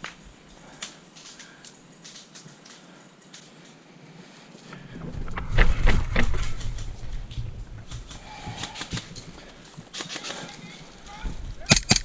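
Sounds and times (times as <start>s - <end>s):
microphone handling rumble: 4.7s - 9.2s
sharp clicks: 11.7s - 12.0s.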